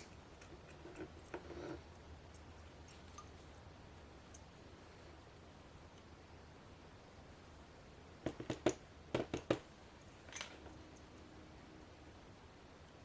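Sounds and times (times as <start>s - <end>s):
soft scrape: 0.9s - 1.8s.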